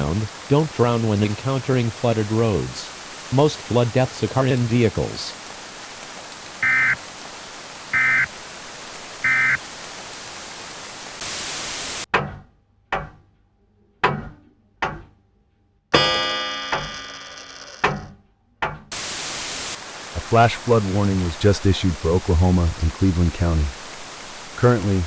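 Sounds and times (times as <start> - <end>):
static burst: 11.2 - 12.1, 18.9 - 20.4
steady radio hiss: 11.2 - 12.1, 18.9 - 25.0
two-tone data bursts: 11.2 - 12.1, 16.0 - 18.0, 18.9 - 19.8
sudden ringing hits: 16.0 - 19.8.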